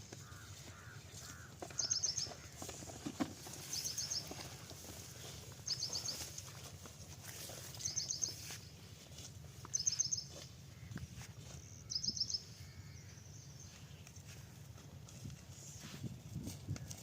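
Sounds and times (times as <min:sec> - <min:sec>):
bird chirping: 0:01.7 - 0:02.4, 0:05.7 - 0:06.2, 0:07.8 - 0:08.5, 0:09.7 - 0:10.4.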